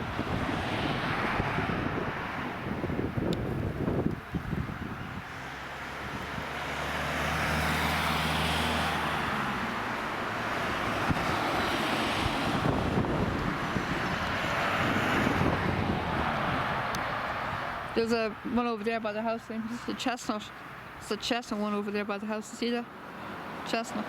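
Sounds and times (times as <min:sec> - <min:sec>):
wind noise on microphone: 0:00.0 - 0:19.1
low engine hum: 0:00.0 - 0:22.2.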